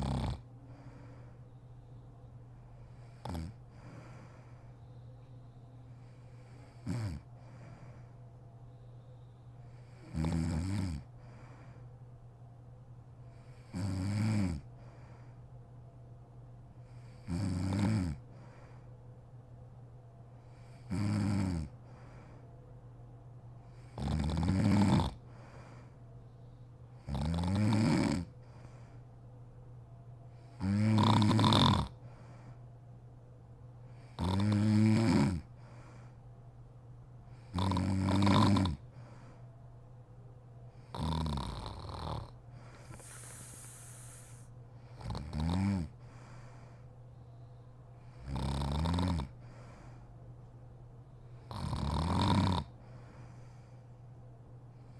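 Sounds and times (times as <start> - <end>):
woman snoring: 0.0 - 0.4, 3.2 - 3.6, 6.8 - 7.2, 10.0 - 11.0, 13.7 - 14.6, 17.2 - 18.2, 20.9 - 21.7, 24.0 - 25.2, 27.1 - 28.3, 30.6 - 32.0, 34.2 - 35.4, 37.5 - 38.8, 40.9 - 45.9, 48.2 - 49.3, 51.5 - 52.7
steady low hum: 0.0 - 27.6, 28.2 - 54.9.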